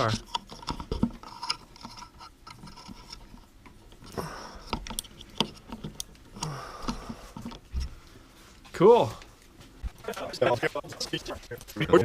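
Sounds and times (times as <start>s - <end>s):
hand tools clicking and tapping: 0.0s - 7.6s.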